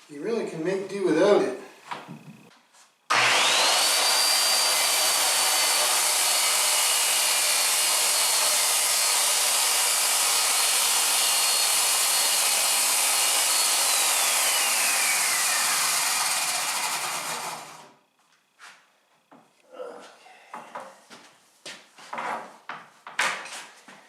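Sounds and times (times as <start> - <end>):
circular saw cutting panel: 3.1 - 18.0.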